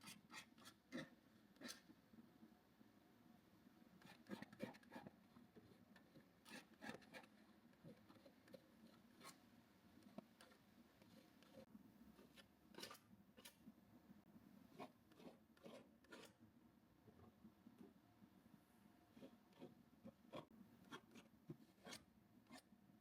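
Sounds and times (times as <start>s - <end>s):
paintbrush scratching on canvas: 4.0s - 9.4s, 14.7s - 16.4s, 19.1s - 22.7s.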